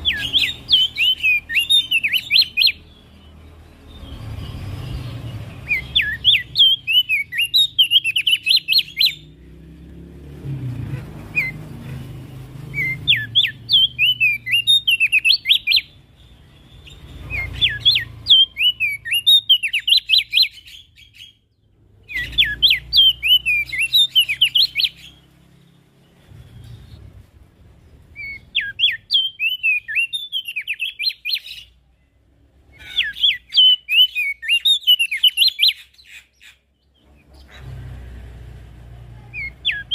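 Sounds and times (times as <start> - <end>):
bird chirping song: 0.0 - 39.9.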